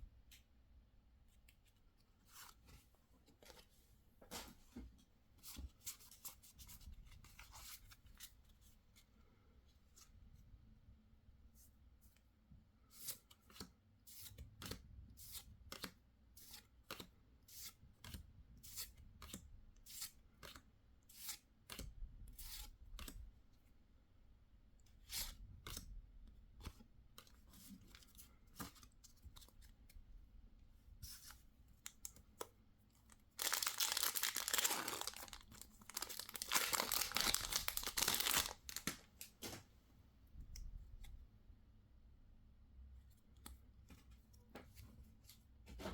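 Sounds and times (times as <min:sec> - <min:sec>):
wrapper tearing and crinkling: 0:33.4 - 0:39.3.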